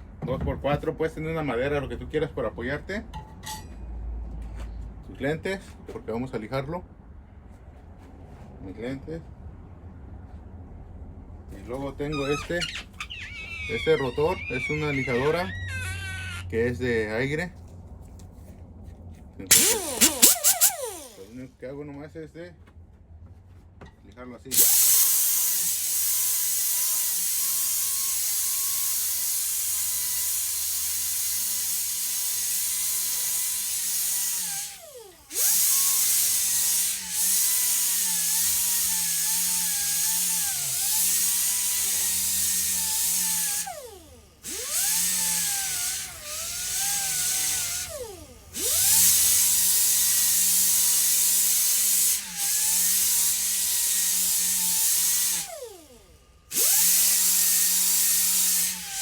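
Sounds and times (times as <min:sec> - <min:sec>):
air sander hissing and whining: 0:12.2 - 0:16.4, 0:19.5 - 0:21.5, 0:24.5 - 0:59.0.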